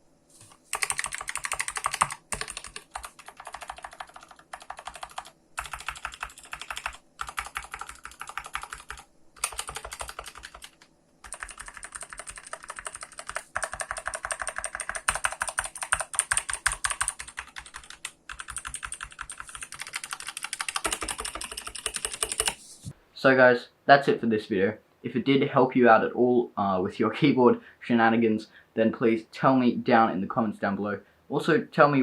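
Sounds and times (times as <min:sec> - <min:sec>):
mechanical keyboard typing: 0:00.7 - 0:22.6.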